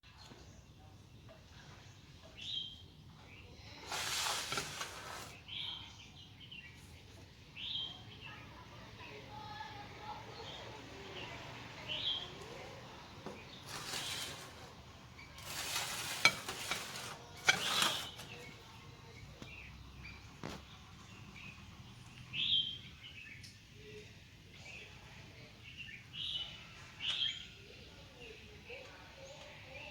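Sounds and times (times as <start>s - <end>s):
bird chirps: 22.3s - 23.6s.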